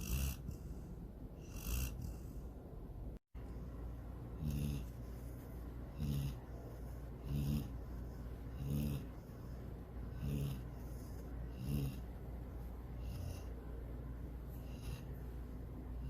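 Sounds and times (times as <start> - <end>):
dog snoring: 0.0 - 2.5, 4.4 - 12.1, 13.0 - 13.6, 14.6 - 15.2.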